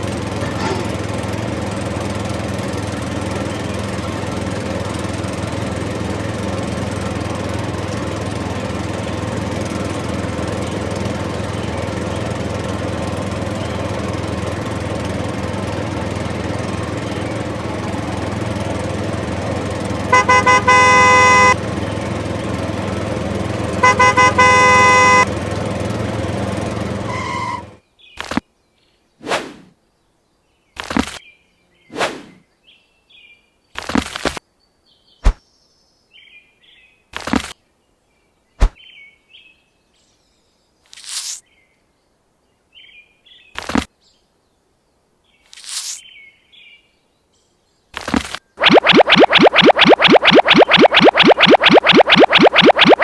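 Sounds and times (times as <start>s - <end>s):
motor drone: 0.0s - 27.7s
horn toots and blast: 20.0s - 21.8s, 23.6s - 25.5s, 27.0s - 27.8s, 48.6s - 53.0s.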